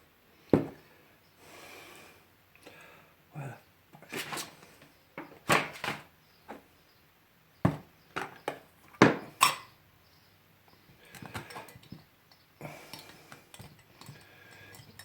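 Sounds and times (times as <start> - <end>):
tools set down on workbench: 7.7 - 9.7.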